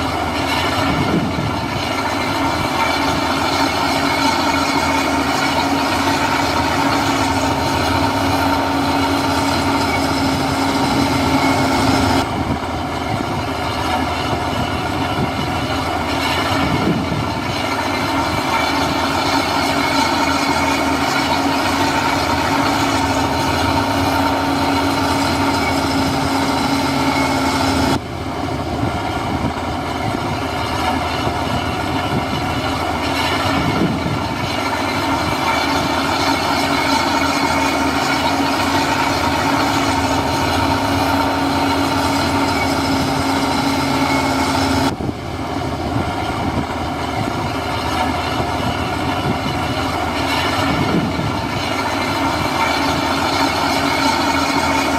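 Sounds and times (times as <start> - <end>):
bulldozer engine and tracks clattering: 0.0 - 54.9.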